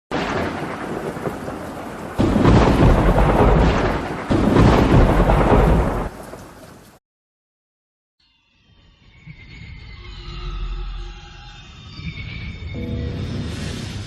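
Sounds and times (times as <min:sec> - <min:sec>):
loud thunder claps: 0:00.1 - 0:06.4
rain: 0:00.1 - 0:07.0
thunder rumbling: 0:00.1 - 0:07.0.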